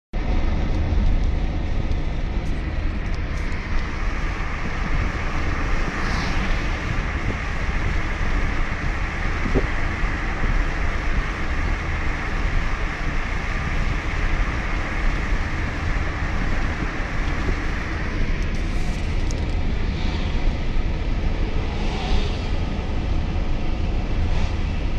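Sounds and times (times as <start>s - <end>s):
car road and engine rumble: 0.2s - 24.9s
rain spray and wind hiss: 2.4s - 19.8s.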